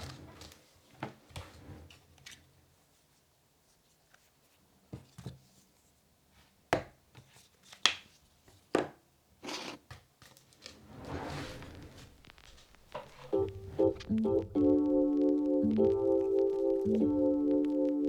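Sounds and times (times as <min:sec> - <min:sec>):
rustling sliding noise: 0:10.6 - 0:14.4.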